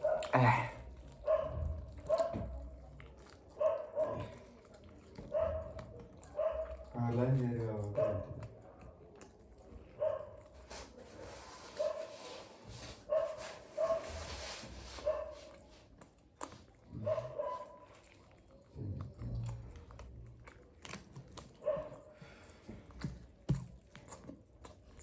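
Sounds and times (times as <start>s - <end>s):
dog barking: 0.0s - 0.4s, 1.1s - 2.6s, 3.2s - 4.5s, 5.2s - 6.9s, 7.8s - 8.5s, 9.9s - 10.5s, 11.7s - 12.3s, 13.0s - 14.3s, 15.0s - 15.6s, 16.9s - 18.1s, 21.5s - 22.1s.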